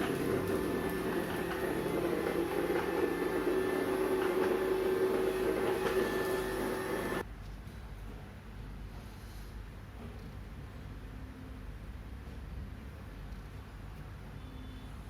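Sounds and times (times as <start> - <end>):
robot vacuum cleaner motor whir: 0.0 - 7.2.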